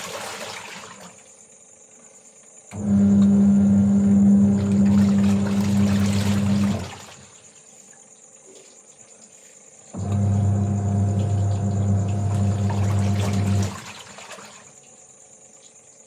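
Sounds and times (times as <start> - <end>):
water rushing: 4.5 - 7.4, 10.9 - 14.7
insects trilling: 7.0 - 10.0
electric motor humming: 10.0 - 13.7.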